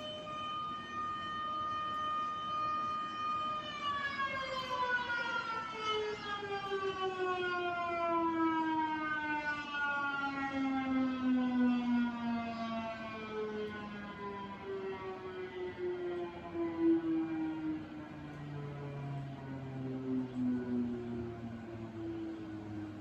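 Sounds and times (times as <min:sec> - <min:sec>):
siren winding down: 0:00.0 - 0:23.0.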